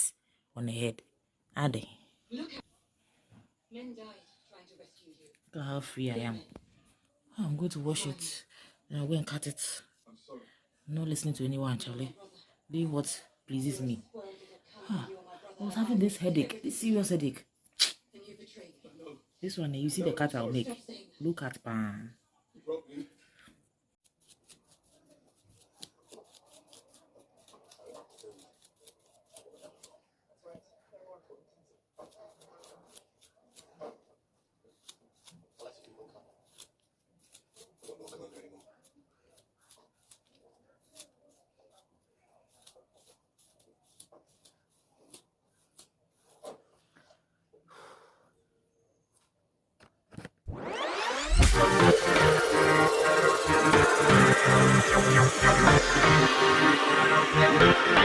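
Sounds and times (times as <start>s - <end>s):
scissors snipping hair: 17.8s - 18.0s, 24.0s - 30.0s, 32.0s - 33.9s, 34.7s - 35.7s, 36.4s - 41.2s, 42.5s - 45.9s.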